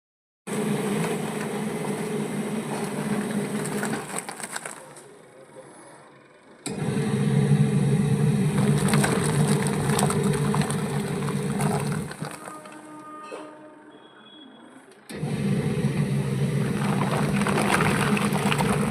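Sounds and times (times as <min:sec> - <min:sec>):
washing machine motor humming: 0:00.5 - 0:04.3, 0:06.6 - 0:12.6, 0:15.1 - 0:18.9.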